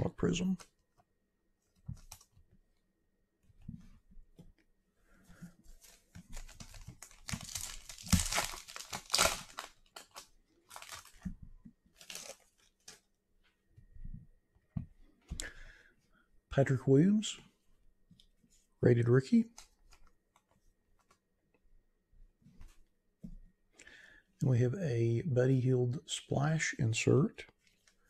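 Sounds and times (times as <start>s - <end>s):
foil wrapper tearing and crinkling: 6.4s - 11.2s, 12.0s - 12.7s.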